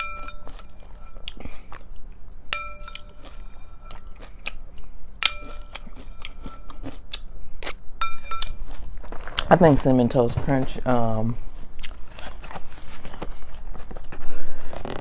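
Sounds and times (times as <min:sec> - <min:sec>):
spoon clinking against bowl: 0:00.0 - 0:01.2, 0:02.5 - 0:04.2, 0:05.2 - 0:06.8, 0:08.0 - 0:08.6
crunchy chewing of cereal: 0:00.0 - 0:09.8, 0:11.4 - 0:14.9.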